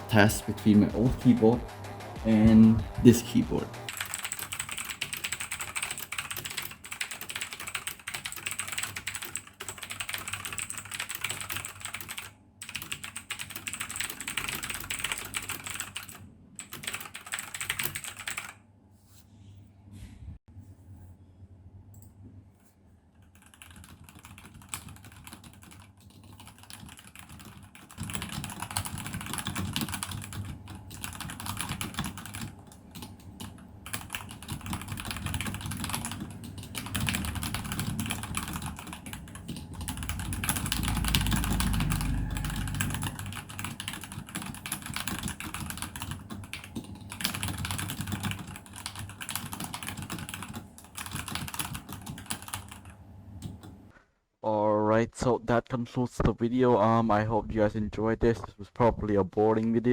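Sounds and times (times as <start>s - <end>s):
low rumble: 0.0s - 3.9s, 36.6s - 44.2s
fast typing on keyboard: 3.9s - 18.6s, 23.2s - 53.7s.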